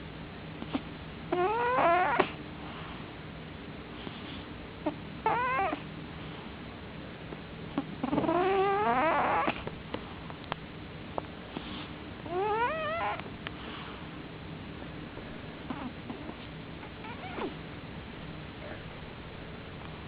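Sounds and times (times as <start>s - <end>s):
cat snoring: 0.6s - 2.4s, 4.8s - 5.8s, 7.8s - 9.6s, 11.6s - 13.2s, 15.7s - 17.6s.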